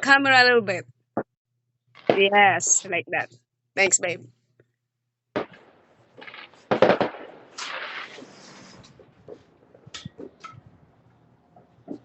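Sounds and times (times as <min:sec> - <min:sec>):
fireworks bangs: 0:02.0 - 0:02.8, 0:05.3 - 0:12.0
fireworks pops: 0:02.0 - 0:02.8, 0:05.3 - 0:10.8
fireworks crackling: 0:05.4 - 0:10.7.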